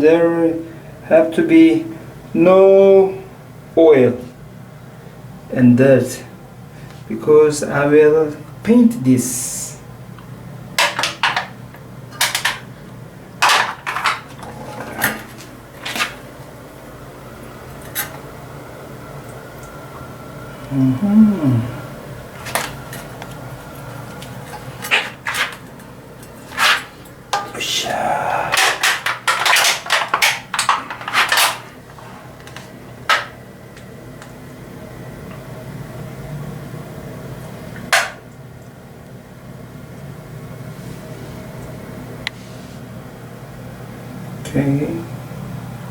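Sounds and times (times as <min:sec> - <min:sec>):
metal parts clinking and clattering: 0:12.1 - 0:12.6, 0:13.4 - 0:16.2, 0:24.4 - 0:27.6, 0:28.5 - 0:31.7.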